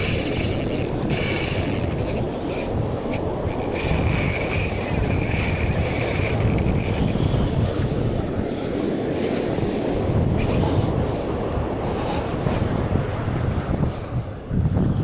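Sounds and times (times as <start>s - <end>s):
fishing reel whirring: 0.0s - 10.9s, 12.2s - 12.8s
wind noise on microphone: 0.0s - 15.0s.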